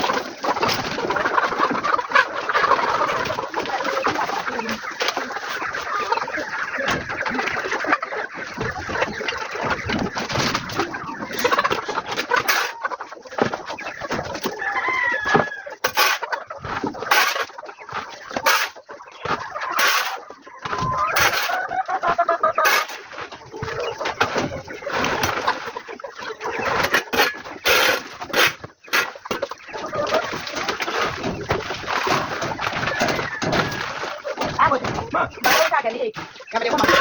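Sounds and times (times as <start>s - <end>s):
chicken drawn-out call: 0.0s - 37.0s
chickens clucking: 0.0s - 37.0s
shovel scraping and knocking: 15.4s - 17.5s, 18.4s - 21.6s, 22.6s - 23.3s, 26.8s - 29.2s.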